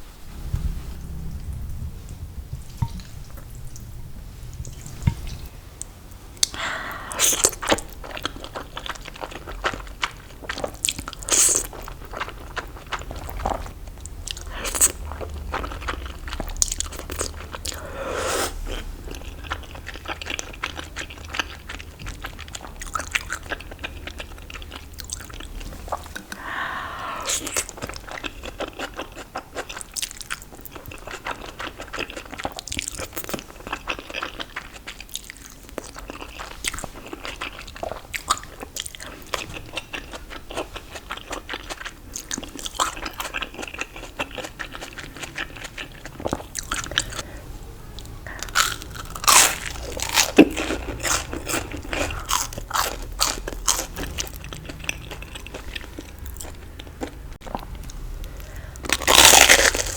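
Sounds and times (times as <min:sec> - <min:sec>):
crackly chewing: 0:04.6 - 0:47.3, 0:47.9 - 0:59.9
crunchy bites into fried food: 0:58.9 - 0:59.9.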